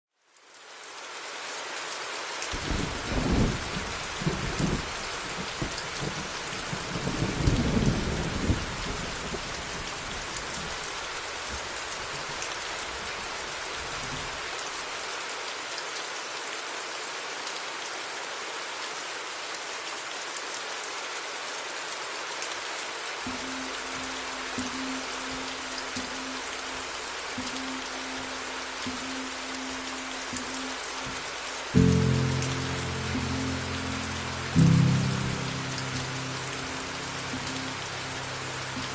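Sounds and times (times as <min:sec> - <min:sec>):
steady rain falling: 0:00.1 - 0:38.9
thunder rumbling: 0:02.6 - 0:10.8.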